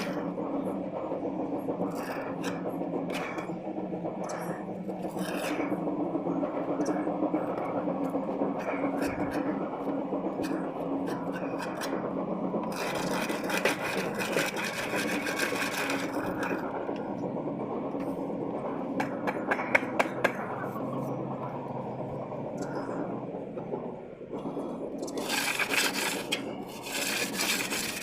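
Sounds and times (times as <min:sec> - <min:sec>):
trowel scraping wet plaster: 0:05.0 - 0:05.8, 0:10.3 - 0:12.0, 0:12.6 - 0:16.6, 0:25.0 - 0:28.0.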